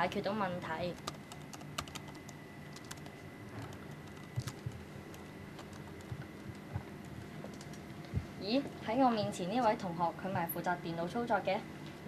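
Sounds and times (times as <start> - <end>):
keyboard key clicks: 2.8 - 7.8.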